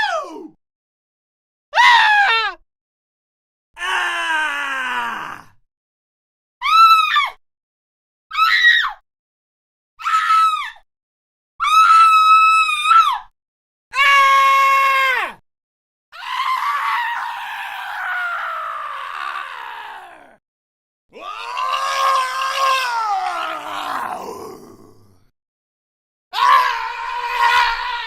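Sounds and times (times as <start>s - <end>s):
high-pitched screams: 16.2s - 20.3s, 21.2s - 24.6s, 26.4s - 28.0s.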